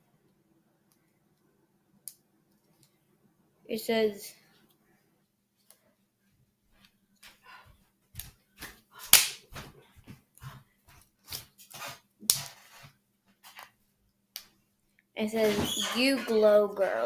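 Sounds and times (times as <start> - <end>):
handling rustles and taps: 9.5 - 13.8.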